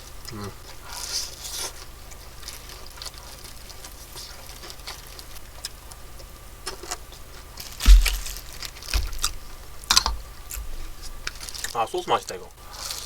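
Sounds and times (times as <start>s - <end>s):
food handling clicks and rustles: 0.7s - 13.0s
thump on table: 7.9s - 8.4s.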